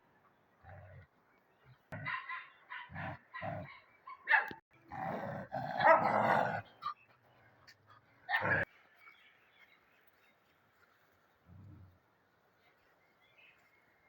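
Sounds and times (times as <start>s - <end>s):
dogs barking: 1.9s - 4.6s, 5.4s - 7.0s, 8.2s - 8.7s.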